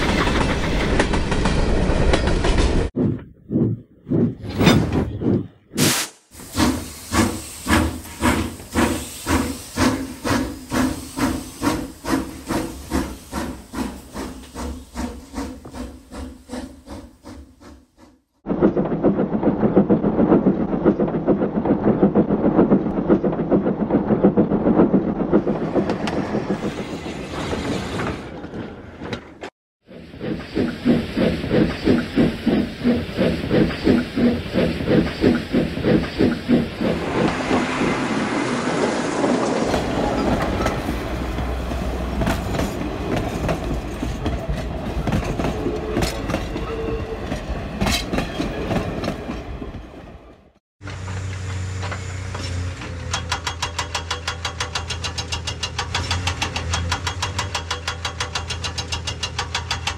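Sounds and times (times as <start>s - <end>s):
steam hiss: 5.8s - 15.9s
steam locomotive chuffing: 6.4s - 28.2s, 29.8s - 38.2s.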